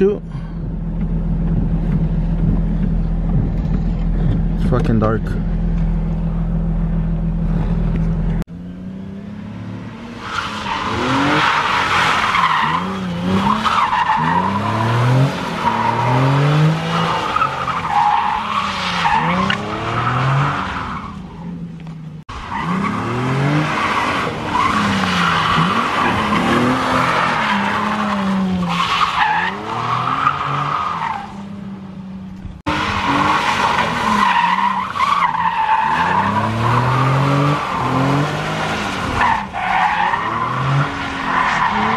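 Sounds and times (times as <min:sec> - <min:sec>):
car engines revving: 0:00.0 - 0:41.9
tires squealing: 0:10.0 - 0:21.7, 0:22.3 - 0:31.7, 0:32.7 - 0:41.9.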